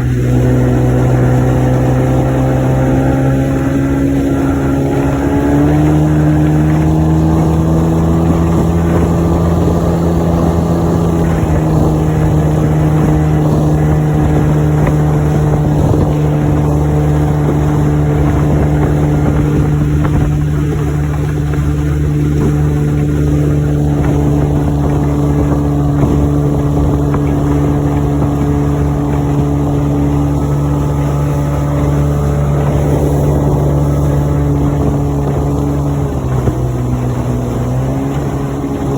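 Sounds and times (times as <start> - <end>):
outboard motor running: 0.0 - 38.9.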